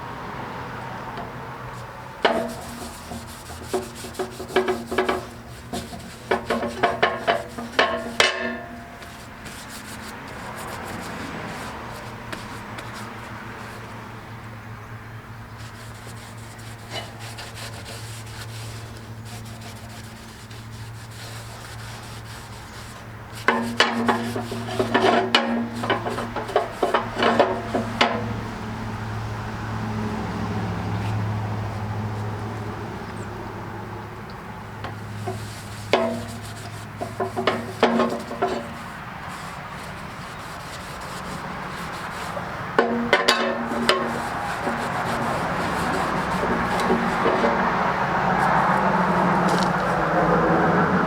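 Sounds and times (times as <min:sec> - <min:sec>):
rough scraping and scrubbing: 0:01.1 - 0:14.2, 0:15.4 - 0:29.0, 0:34.8 - 0:50.9.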